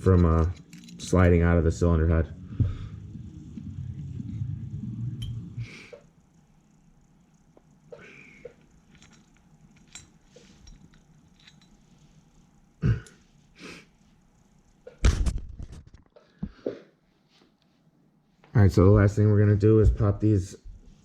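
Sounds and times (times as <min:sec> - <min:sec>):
tools knocking and clattering: 0:00.0 - 0:01.4, 0:08.9 - 0:11.8.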